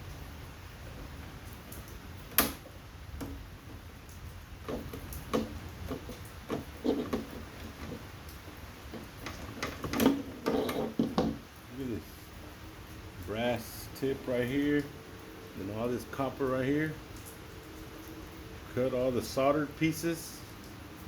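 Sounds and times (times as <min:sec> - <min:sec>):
knocks and clicks of parts handled: 0:04.6 - 0:08.1, 0:08.9 - 0:11.4.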